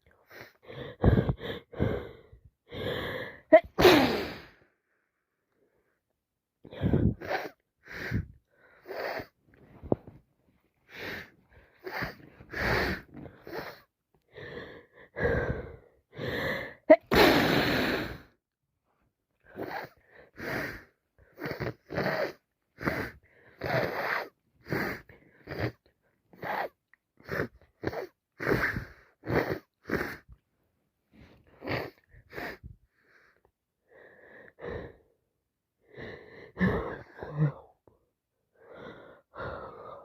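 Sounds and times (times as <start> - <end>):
woman sniffing through congested nose: 3.8 - 4.6, 6.9 - 9.4, 10.9 - 13.9, 17.0 - 18.3, 19.6 - 25.8, 26.4 - 30.3, 31.2 - 32.7.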